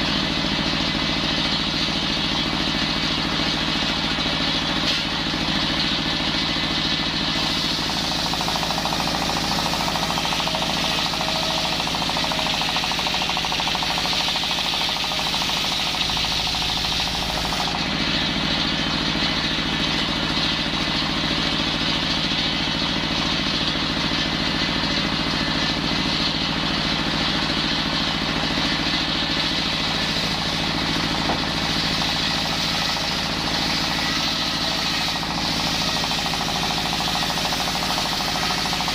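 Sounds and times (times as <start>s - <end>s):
saw blade hissing through wood: 7.3s - 17.8s, 30.0s - 38.9s
circular saw engine drone: 7.3s - 20.9s.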